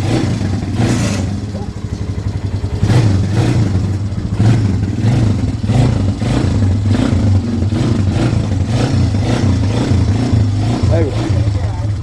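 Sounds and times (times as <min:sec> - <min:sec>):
small engine revving: 0:00.0 - 0:01.8, 0:02.8 - 0:12.0.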